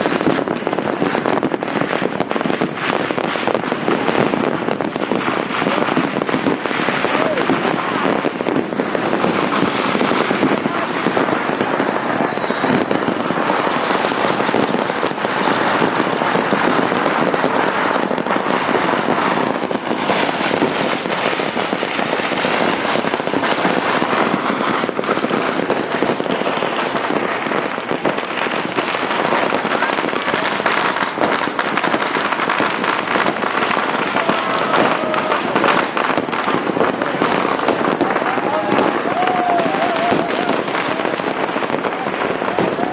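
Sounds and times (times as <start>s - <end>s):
fireworks and firecrackers crackling: 0.0s - 42.9s.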